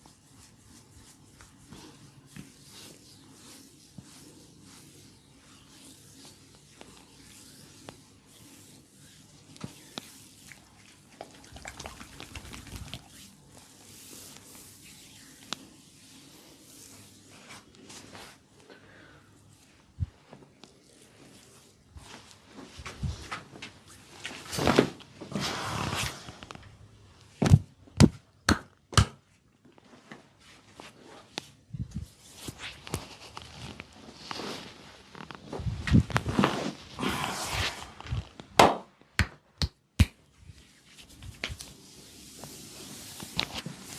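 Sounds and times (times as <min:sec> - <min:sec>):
hands rubbing on skin: 0:00.0 - 0:18.4, 0:40.0 - 0:43.9.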